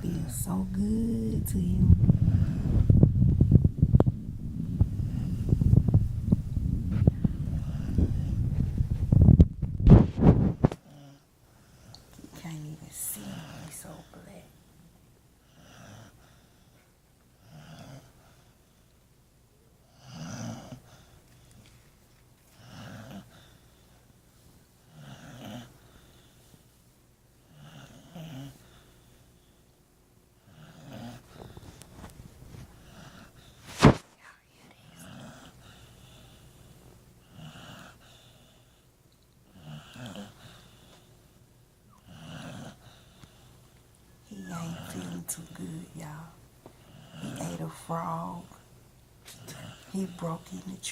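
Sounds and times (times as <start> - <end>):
dog snoring: 0.3 - 8.6, 13.2 - 14.2, 15.4 - 16.8, 17.4 - 18.4, 19.9 - 21.2, 22.6 - 23.6, 24.8 - 26.4, 27.4 - 28.9, 30.4 - 31.8, 32.8 - 34.0, 34.8 - 36.6, 37.2 - 38.8, 39.4 - 41.1, 42.0 - 43.5, 46.8 - 48.6.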